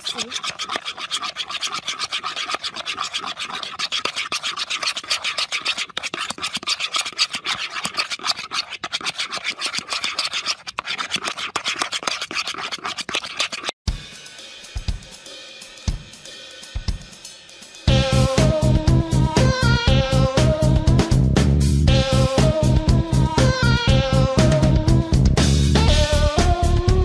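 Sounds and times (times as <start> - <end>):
utensil scraping around bowl: 0.0 - 13.8.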